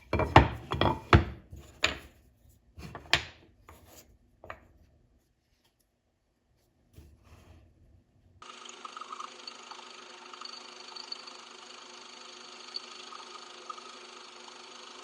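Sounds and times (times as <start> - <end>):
machine humming: 8.4 - 15.0.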